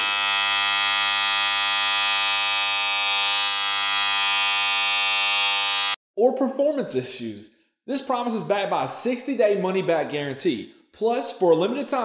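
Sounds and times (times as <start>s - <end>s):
electric hair clipper buzzing: 0.0s - 6.0s.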